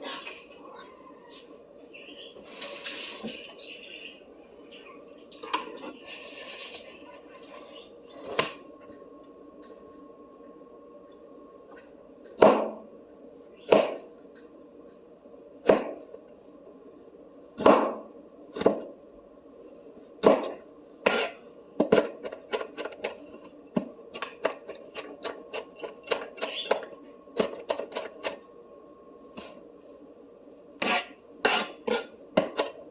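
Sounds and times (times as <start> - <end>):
knife chopping on cutting board: 12.4 - 12.8, 13.7 - 14.0, 15.6 - 16.0, 17.6 - 18.0.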